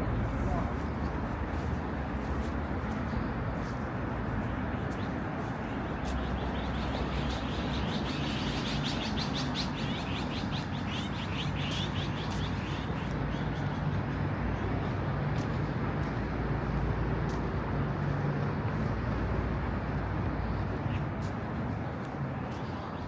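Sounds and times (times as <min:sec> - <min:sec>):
low rumble of city traffic: 0:00.0 - 0:23.0
small birds chirping: 0:05.9 - 0:14.2.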